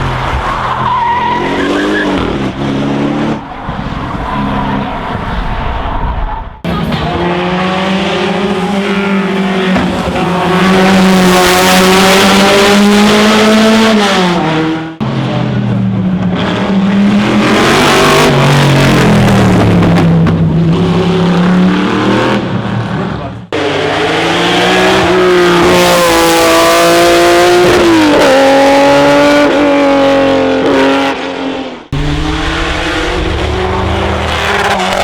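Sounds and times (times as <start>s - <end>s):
racing car engine revving: 0.0s - 15.6s, 23.5s - 35.0s.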